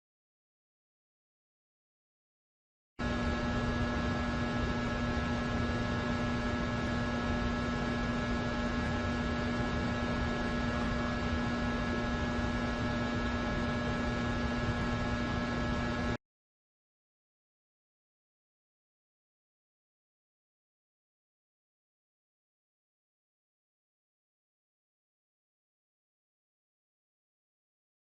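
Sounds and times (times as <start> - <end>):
electrical hum: 3.0 - 16.2.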